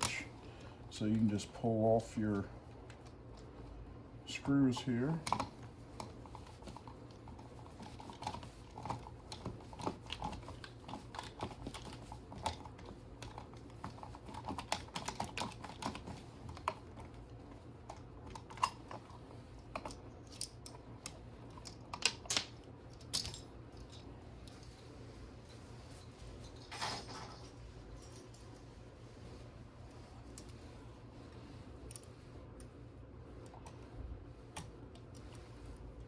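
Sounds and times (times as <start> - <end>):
metal parts clicking and tapping: 19.7 - 24.6.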